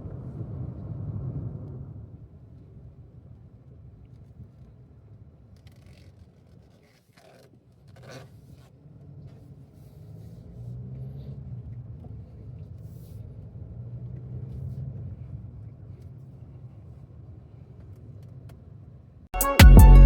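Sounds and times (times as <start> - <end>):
car engine and exhaust droning: 8.0 - 18.0.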